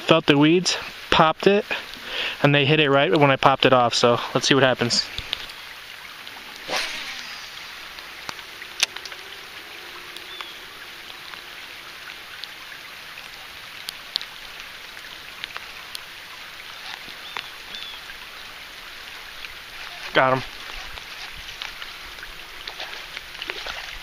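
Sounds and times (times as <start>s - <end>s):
rain hissing: 0.0s - 2.7s, 3.9s - 24.0s
sharp drips: 3.0s - 24.0s
brief whoosh: 6.5s - 9.4s.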